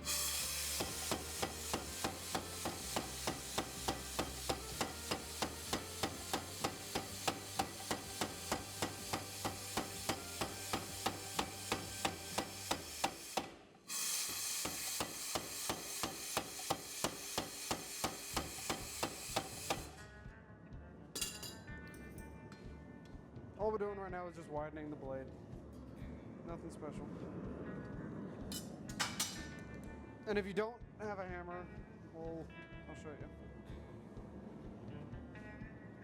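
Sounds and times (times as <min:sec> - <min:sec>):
power hammer ringing on steel: 0:00.0 - 0:20.0.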